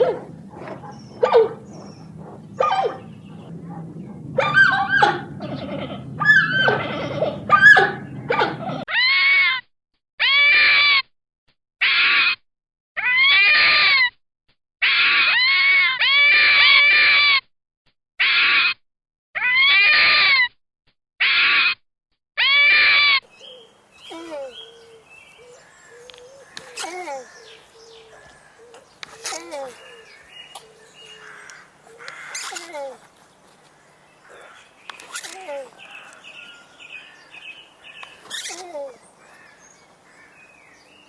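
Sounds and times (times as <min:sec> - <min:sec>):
low rumble: 0:00.0 - 0:08.8
high screaming animal calls: 0:00.0 - 0:09.1, 0:24.1 - 0:32.8, 0:34.2 - 0:40.5
animal yelps and cries: 0:00.0 - 0:09.6, 0:13.0 - 0:14.1, 0:14.8 - 0:17.4, 0:19.4 - 0:20.5, 0:22.4 - 0:23.2, 0:24.1 - 0:33.1, 0:34.2 - 0:36.7, 0:38.0 - 0:39.6.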